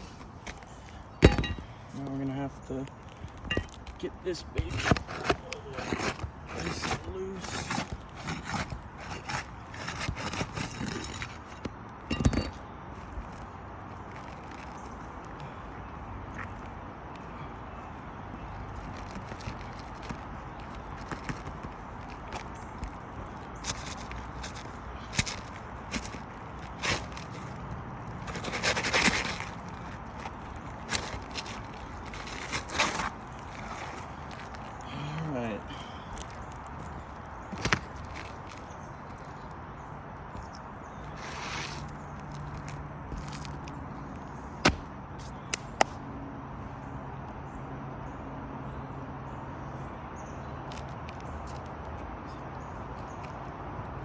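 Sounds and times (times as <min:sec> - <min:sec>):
roof shingle scraping and rustling: 0:00.0 - 0:15.6, 0:18.2 - 0:39.5, 0:41.0 - 0:46.0.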